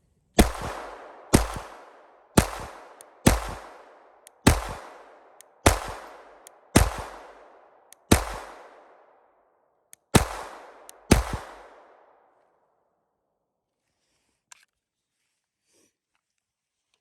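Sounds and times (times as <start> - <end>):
pistol shots ringing: 0.4 - 9.2, 10.1 - 12.2.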